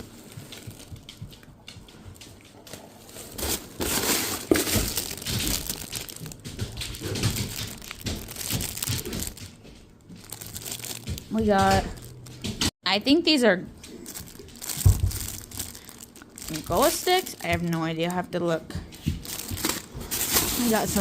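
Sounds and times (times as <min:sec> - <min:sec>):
plastic packaging crinkling: 0:02.6 - 0:12.4, 0:13.9 - 0:18.2, 0:19.1 - 0:21.0.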